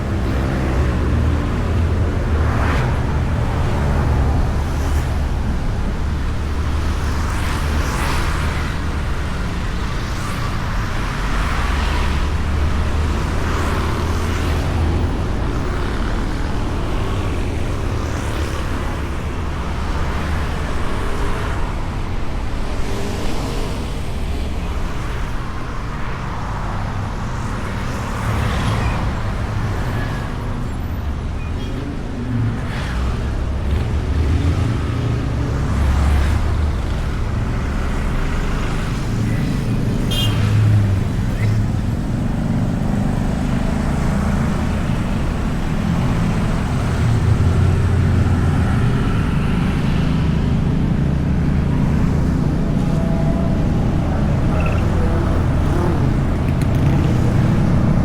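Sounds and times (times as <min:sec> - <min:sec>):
wind and road rumble: 0:00.0 - 0:58.0
vehicles swishing past: 0:22.8 - 0:58.0.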